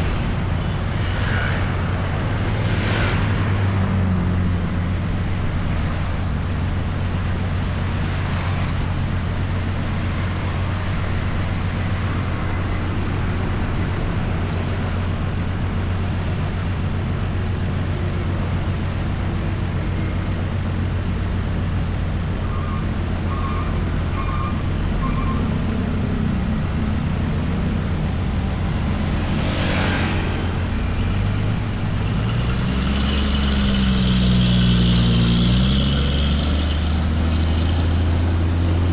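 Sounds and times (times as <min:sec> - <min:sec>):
road traffic passing: 0:00.0 - 0:38.9
large engine revving: 0:23.7 - 0:38.9.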